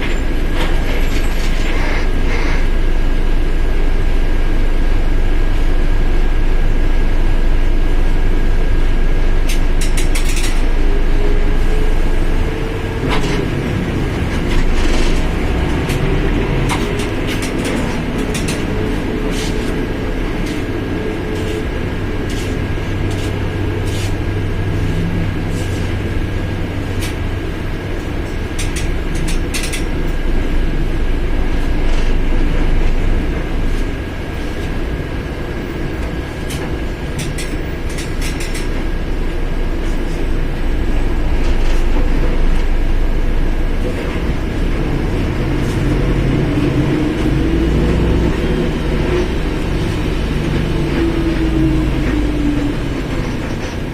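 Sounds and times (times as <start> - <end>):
bus drivetrain rumble: 0.0 - 53.9
high differential whine: 0.0 - 53.9
rattles and clicks: 9.5 - 10.7, 13.0 - 20.7, 28.0 - 30.2, 36.0 - 38.9.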